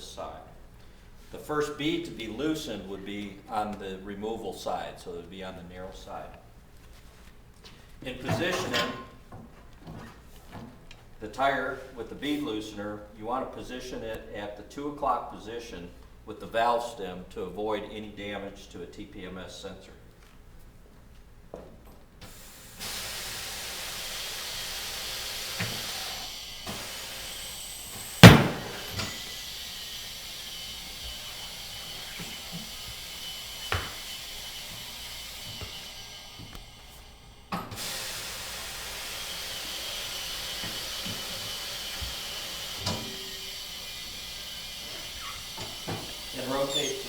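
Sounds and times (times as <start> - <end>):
compressed air hissing: 22.2 - 47.0.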